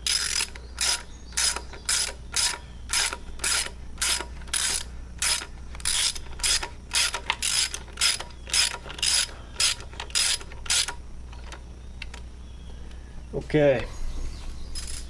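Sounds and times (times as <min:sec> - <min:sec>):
ratchet wrench clicking: 0:00.0 - 0:11.6, 0:14.8 - 0:15.0.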